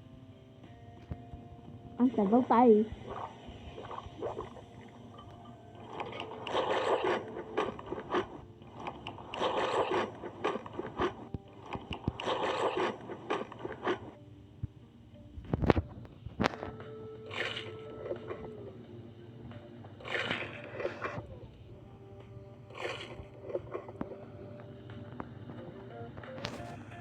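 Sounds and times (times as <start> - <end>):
chewing and mouth noises: 3.0 - 14.2.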